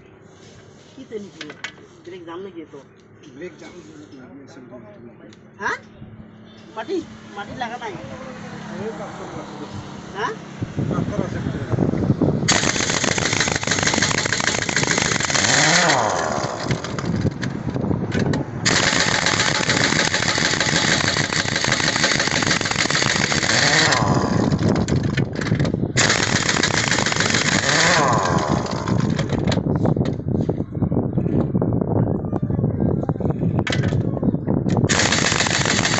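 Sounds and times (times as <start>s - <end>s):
pneumatic impact wrench hammering: 12.5s - 29.6s, 34.8s - 35.9s.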